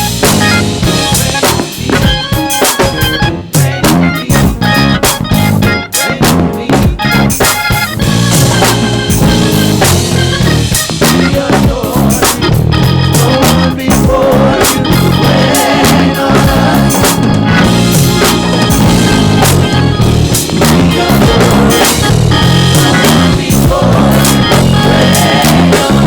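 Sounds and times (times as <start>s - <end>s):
church band playing: 0.0s - 26.0s
drum kit: 0.0s - 26.0s.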